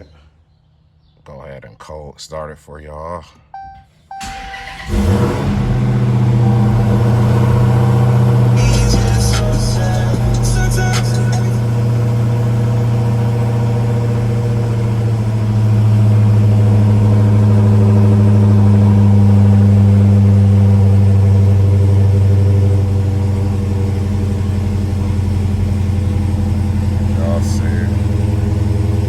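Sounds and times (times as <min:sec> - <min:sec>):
car engine idling: 0:04.1 - 0:29.0.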